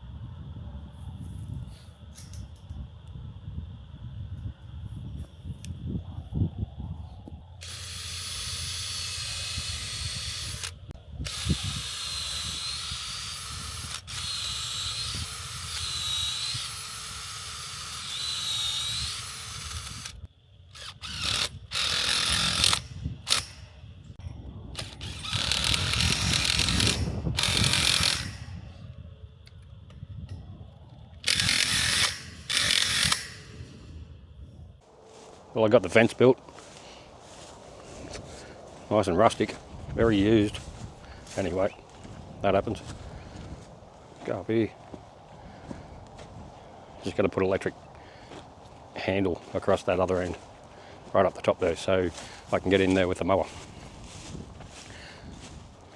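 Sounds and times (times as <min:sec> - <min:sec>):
power drill driving screws: 0:07.6 - 0:23.6, 0:24.8 - 0:28.6, 0:31.2 - 0:33.8.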